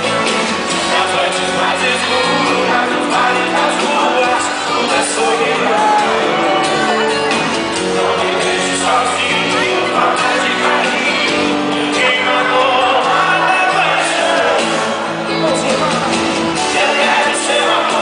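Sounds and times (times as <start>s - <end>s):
crowd shouting along: 0.0s - 18.0s
live band playing with singing: 0.0s - 18.0s.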